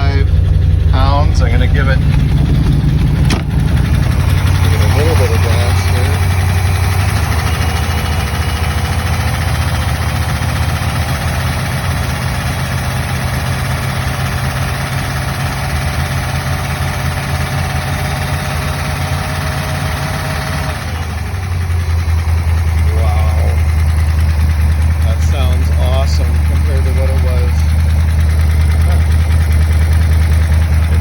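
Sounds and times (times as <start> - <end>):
car engine idling: 0.0 - 31.0.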